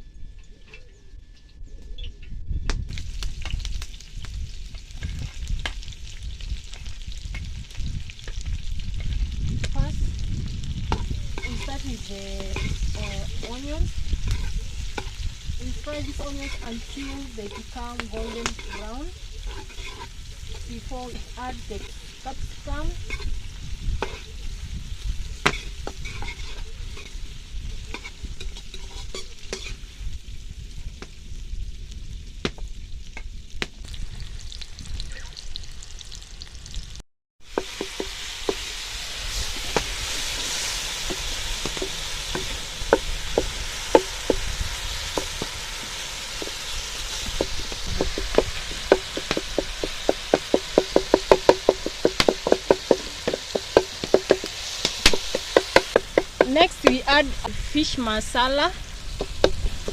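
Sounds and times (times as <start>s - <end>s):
onions sizzling in hot oil: 2.8s - 59.9s
spoon scraping a pot: 10.9s - 24.5s, 25.4s - 29.8s.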